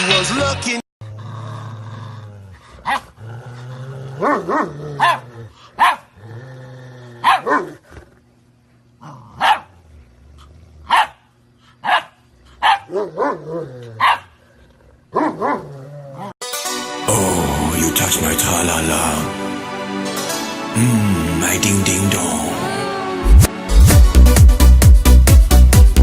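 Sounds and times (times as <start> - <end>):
dog barking: 2.8 - 3.1, 4.2 - 5.2, 5.8 - 6.1, 7.2 - 7.8, 9.4 - 9.7, 10.9 - 11.2, 11.8 - 14.3, 15.1 - 16.3.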